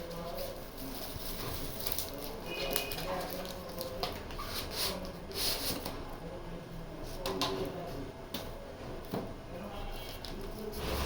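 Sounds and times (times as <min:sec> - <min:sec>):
packaging rustling: 0:00.8 - 0:04.2.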